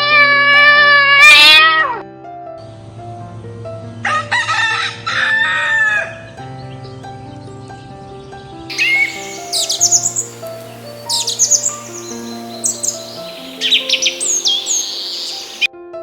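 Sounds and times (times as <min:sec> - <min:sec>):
cat meowing: 0:00.0 - 0:02.0, 0:08.7 - 0:10.4
background music with held notes: 0:01.7 - 0:16.0
rooster crowing: 0:04.1 - 0:06.1, 0:08.7 - 0:15.7.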